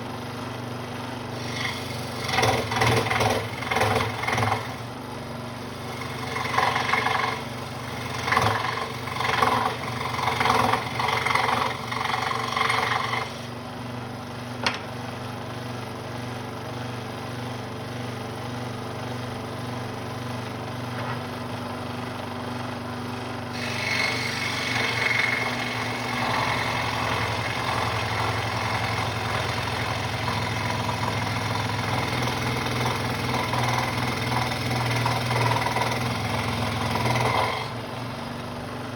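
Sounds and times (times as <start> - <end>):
saw blade cutting wood: 1.3 - 4.9, 5.6 - 13.6, 23.5 - 38.0
scroll saw humming: 1.4 - 4.9, 5.6 - 13.5, 23.3 - 38.0.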